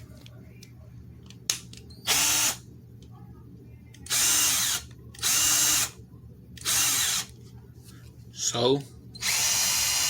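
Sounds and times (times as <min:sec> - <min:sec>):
cordless power tool motor bursts: 0:06.6 - 0:07.3, 0:09.2 - 0:10.0.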